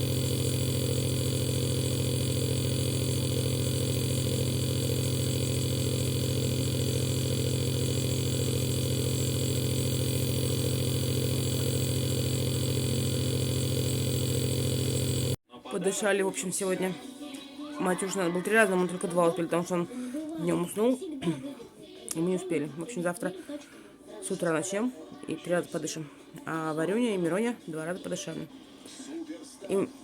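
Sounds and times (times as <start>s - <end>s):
nebulizer compressor buzzing hum: 0.0s - 15.4s.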